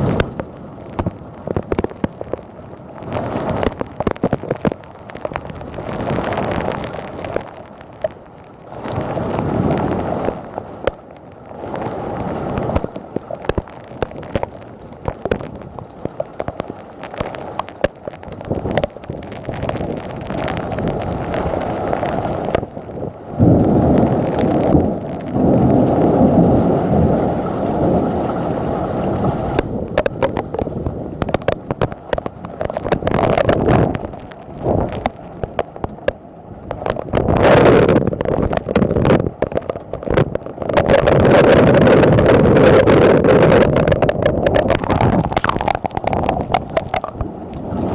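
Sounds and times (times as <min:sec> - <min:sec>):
heavy rain downpour: 0:00.0 - 0:47.9
thunder rumbling: 0:18.0 - 0:47.9.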